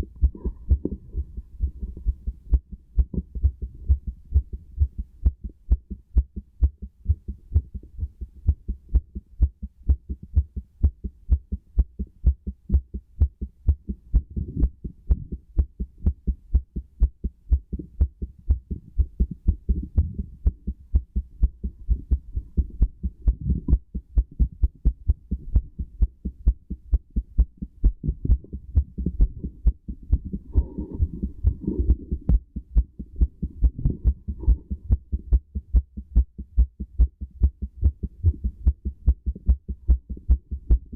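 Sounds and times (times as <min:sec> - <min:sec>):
heartbeat through stethoscope: 0:00.0 - 0:40.9
stethoscope rubbing noise: 0:28.0 - 0:35.4.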